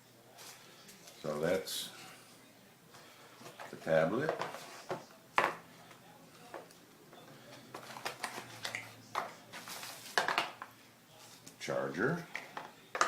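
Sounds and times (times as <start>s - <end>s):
packaging clicks and rustles: 7.5s - 10.6s.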